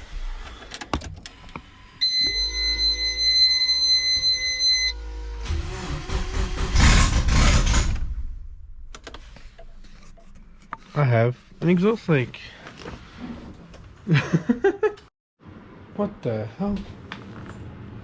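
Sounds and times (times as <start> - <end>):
starter motor cranking whine: 0.0 - 8.1.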